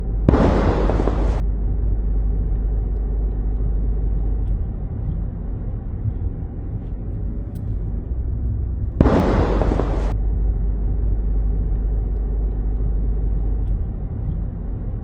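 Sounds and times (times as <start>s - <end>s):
vehicle and street rumble: 0.0s - 15.0s
explosion blast: 0.3s - 1.6s, 9.0s - 10.4s.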